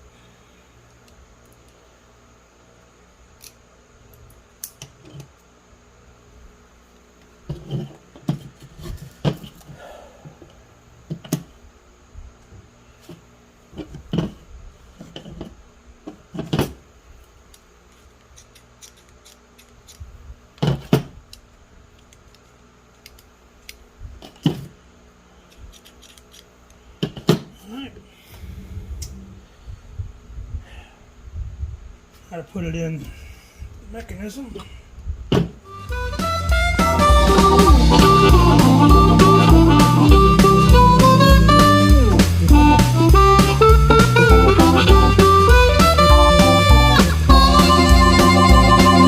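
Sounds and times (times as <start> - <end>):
metal parts and tools clicking: 17.9 - 20.0, 25.5 - 26.5.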